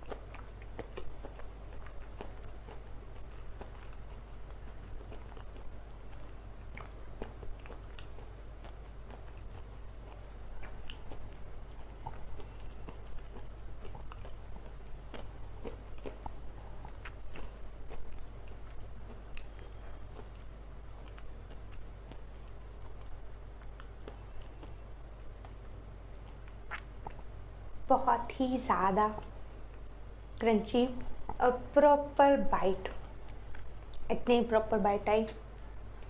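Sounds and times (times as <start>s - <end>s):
crunchy biting and chewing: 0.0s - 27.4s
steady low hum: 0.0s - 36.0s.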